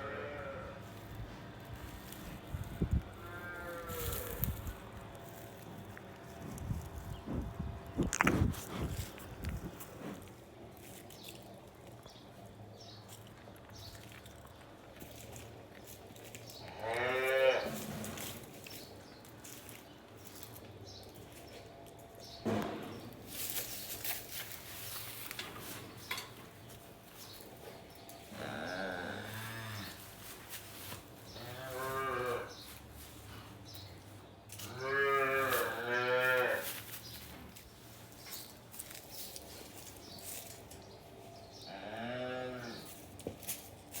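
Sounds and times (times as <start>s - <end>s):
calves mooing: 0.0s - 0.9s, 3.1s - 4.5s, 16.6s - 18.2s, 28.3s - 30.0s, 31.3s - 32.6s, 34.6s - 36.8s, 41.7s - 42.9s
knocks and rustling: 22.4s - 26.6s.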